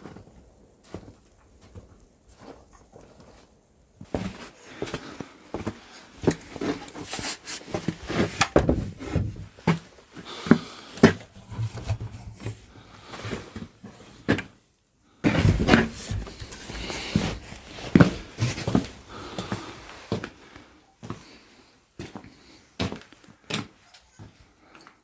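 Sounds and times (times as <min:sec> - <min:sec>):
knocks and clatter of objects: 0:08.1 - 0:09.8, 0:11.0 - 0:12.7.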